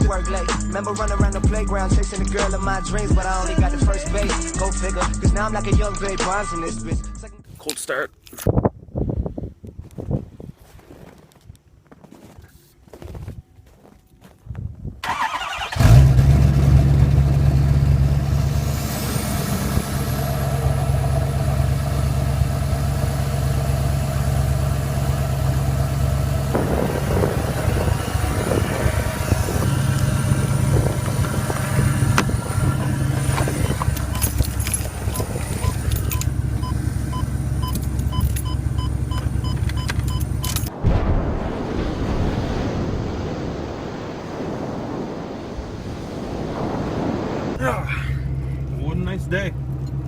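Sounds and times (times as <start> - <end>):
diesel engine cranking and idling: 0.0 - 7.0, 15.0 - 40.8, 47.7 - 50.0
high whine: 17.4 - 43.2.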